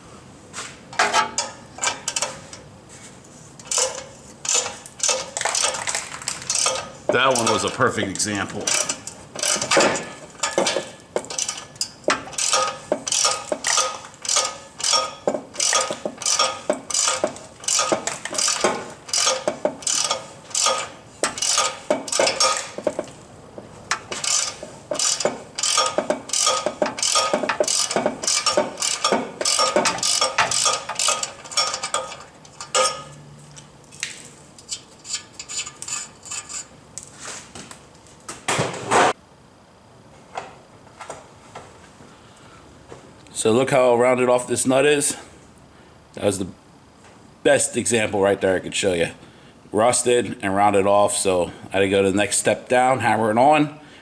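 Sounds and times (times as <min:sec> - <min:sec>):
hand ratchet clicking: 0:03.6 - 0:23.2, 0:23.9 - 0:33.1, 0:34.6 - 0:36.7.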